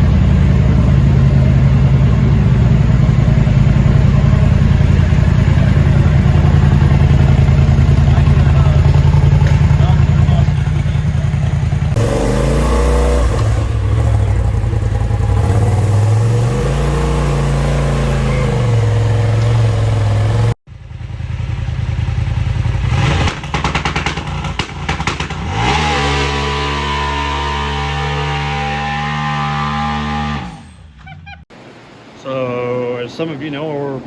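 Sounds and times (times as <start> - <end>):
engine revving: 0.0 - 20.6, 21.3 - 31.0
rapid clatter: 3.1 - 20.6, 23.0 - 25.9.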